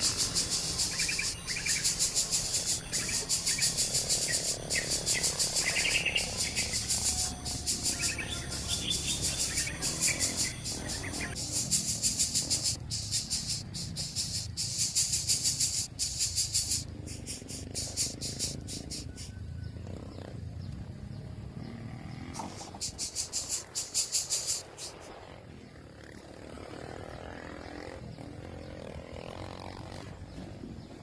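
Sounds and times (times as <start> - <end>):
high-pitched pulsing animal chirr: 0.0 - 19.8, 22.3 - 25.0.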